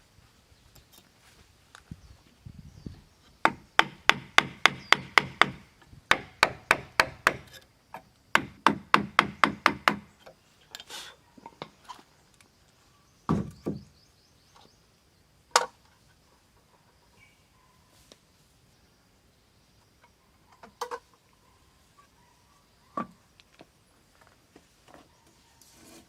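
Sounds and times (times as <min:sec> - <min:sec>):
hand tool striking wood: 0:03.4 - 0:10.1.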